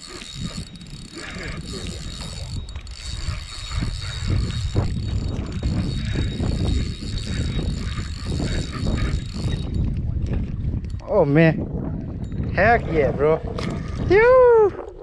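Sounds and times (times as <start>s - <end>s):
fishing reel whirring: 0.0s - 11.1s
wind rumble on microphone: 0.0s - 15.0s.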